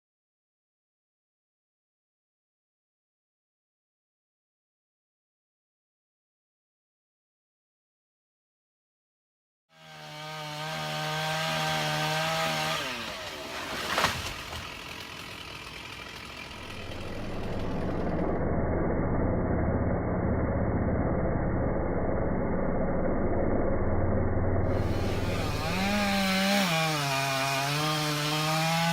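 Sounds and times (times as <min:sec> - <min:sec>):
chainsaw running: 0:09.7 - 0:28.9
sharp crack: 0:13.1 - 0:14.8.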